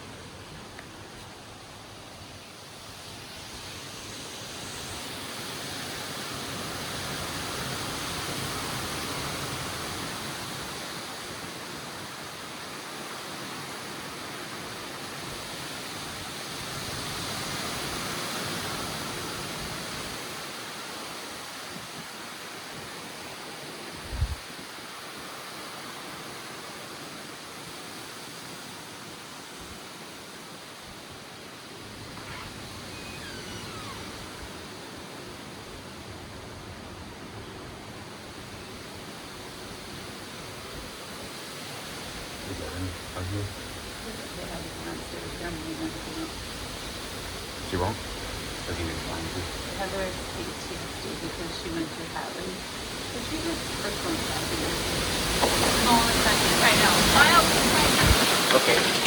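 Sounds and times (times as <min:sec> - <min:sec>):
wind and rain rushing: 0:00.0 - 0:59.0.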